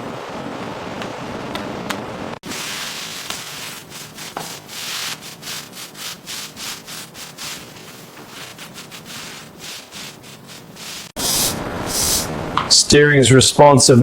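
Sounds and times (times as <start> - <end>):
rubbing on a surface: 2.4 - 12.3.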